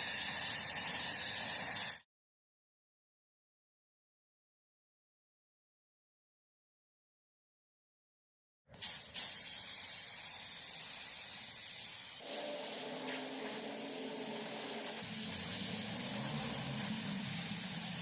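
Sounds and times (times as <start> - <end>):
steady spray hiss: 8.8 - 18.0.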